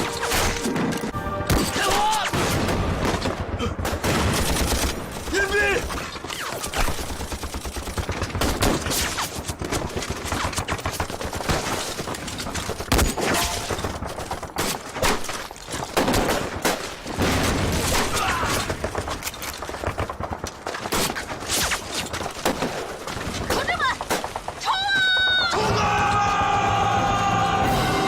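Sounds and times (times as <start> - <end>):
battle gunfire: 1.4 - 15.2.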